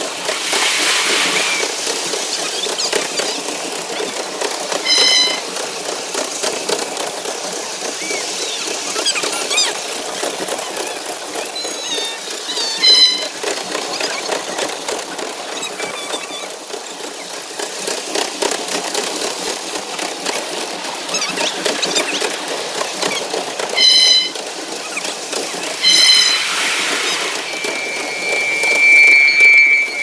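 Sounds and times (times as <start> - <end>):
miniature train wheels rattling: 0.0 - 28.1
high-pitched train toots: 4.7 - 5.7, 12.3 - 13.6, 23.2 - 30.0.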